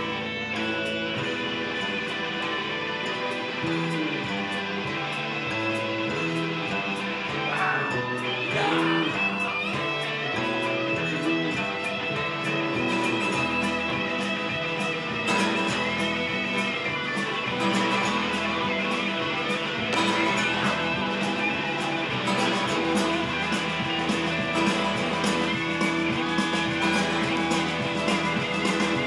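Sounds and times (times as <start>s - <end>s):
strummed guitars: 0.0s - 29.0s
steady drum beat: 11.7s - 29.0s.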